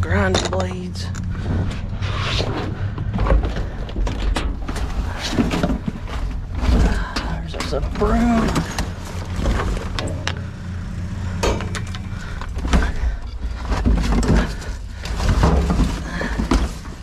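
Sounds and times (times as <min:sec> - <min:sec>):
tools clattering and knocking: 0:00.0 - 0:01.3, 0:11.4 - 0:17.0
steady low rumble: 0:00.0 - 0:17.0.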